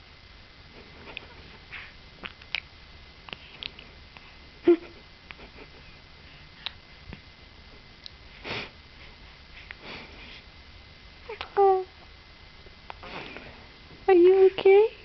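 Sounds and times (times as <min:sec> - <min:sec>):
baby sniffing and snuffling: 0:08.3 - 0:10.5.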